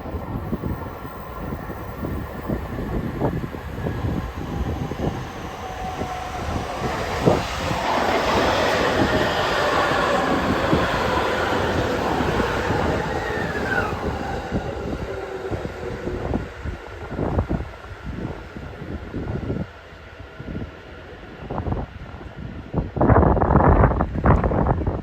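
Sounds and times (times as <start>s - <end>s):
train rumbling and wheel clatter: 0.0s - 25.0s
high wheel squeal: 1.4s - 15.6s.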